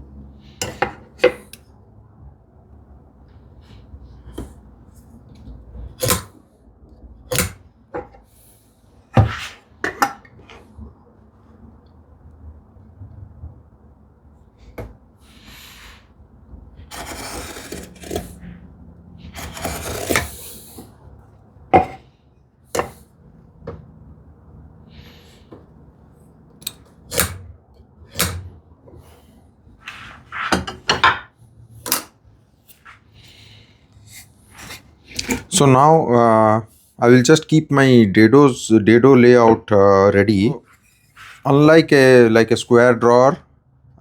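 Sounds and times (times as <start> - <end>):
wood scraping on workbench: 16.8 - 18.5, 19.2 - 21.0, 21.7 - 22.0, 29.8 - 31.2, 40.7 - 41.6.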